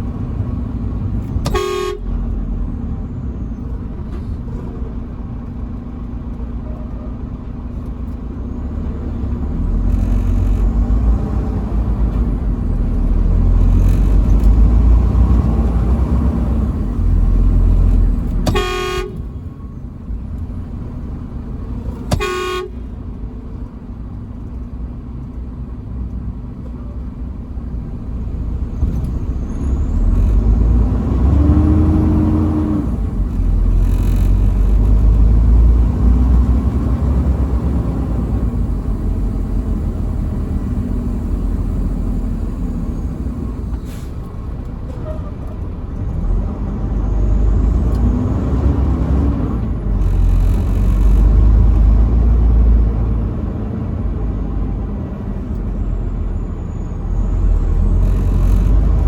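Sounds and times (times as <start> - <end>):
road noise: 0.0 - 59.0
truck engine rumble: 0.0 - 59.0
truck horn blasts: 1.4 - 2.3, 18.0 - 19.5, 22.1 - 22.9.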